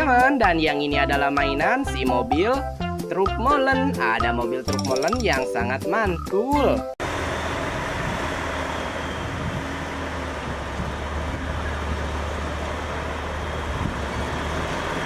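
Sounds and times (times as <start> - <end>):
road noise: 7.0 - 15.0
vehicle engine running: 7.0 - 15.0.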